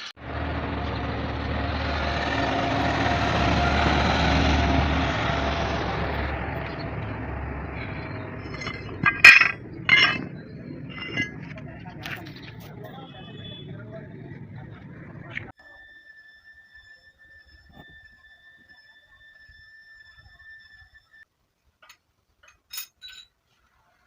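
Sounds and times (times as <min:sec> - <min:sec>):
vehicle engine running: 0:00.0 - 0:15.5
sharp metallic clinks: 0:06.6 - 0:13.5, 0:22.4 - 0:23.3.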